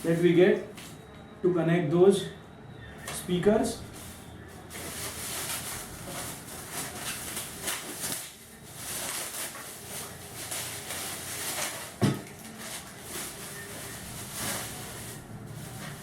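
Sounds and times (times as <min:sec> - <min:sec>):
plastic packaging rustling: 0:03.8 - 0:16.0.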